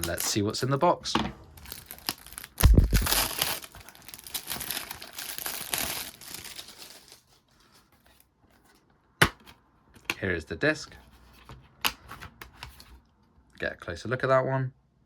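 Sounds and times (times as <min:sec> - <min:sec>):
cellophane wrap crinkling: 0:00.0 - 0:00.4, 0:01.6 - 0:07.3.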